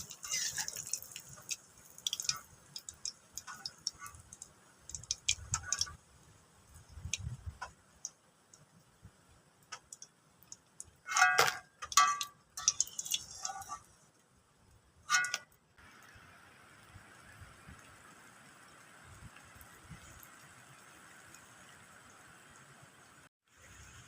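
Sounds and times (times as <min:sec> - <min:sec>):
spoon scraping a plate: 0:00.0 - 0:00.9.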